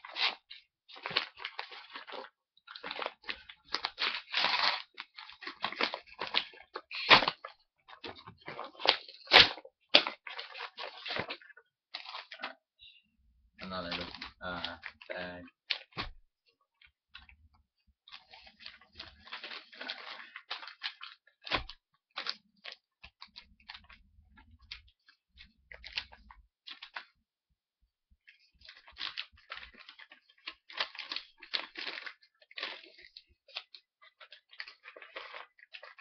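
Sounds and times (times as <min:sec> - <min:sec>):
packaging bag crinkling: 0:00.0 - 0:12.5, 0:18.1 - 0:24.0, 0:28.6 - 0:36.0.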